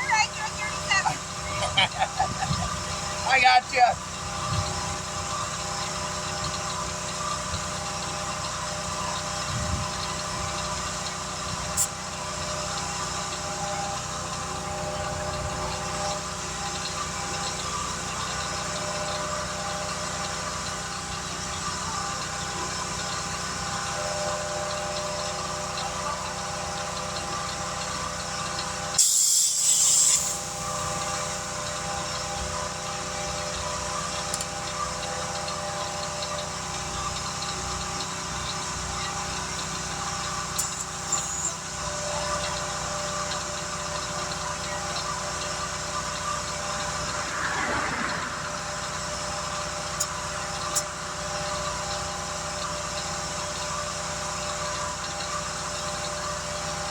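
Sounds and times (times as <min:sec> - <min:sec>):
vehicle engine idling: 0:00.0 - 0:56.9
loud hiss: 0:29.0 - 0:30.6.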